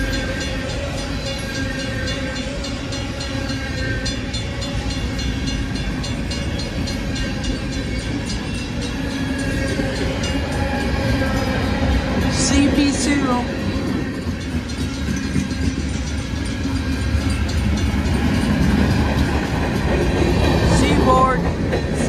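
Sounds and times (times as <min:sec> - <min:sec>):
train rumble: 0:00.0 - 0:22.0
train wheels clicking over rail joints: 0:13.6 - 0:22.0.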